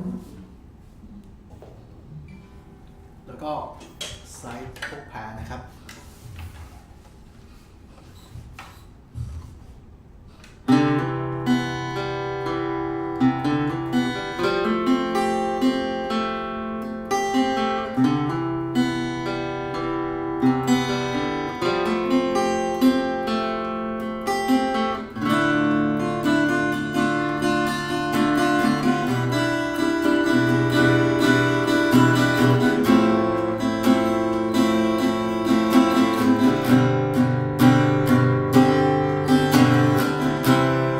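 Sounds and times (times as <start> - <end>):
acoustic guitar chords: 10.6 - 40.9.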